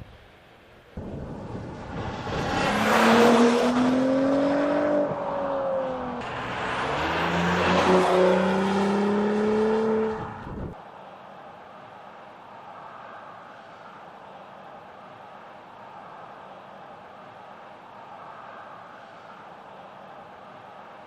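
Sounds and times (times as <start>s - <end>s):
road noise: 0.0s - 21.0s
wind noise: 1.0s - 3.3s, 10.1s - 10.8s
car engine accelerating: 1.0s - 10.8s.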